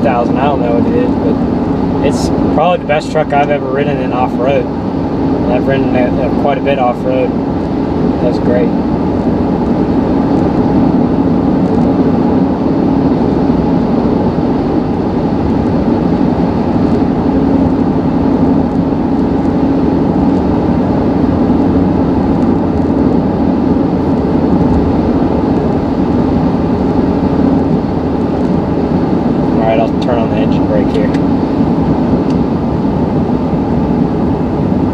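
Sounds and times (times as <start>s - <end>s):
engine droning: 0.0s - 34.9s
road and wind noise: 0.0s - 34.9s.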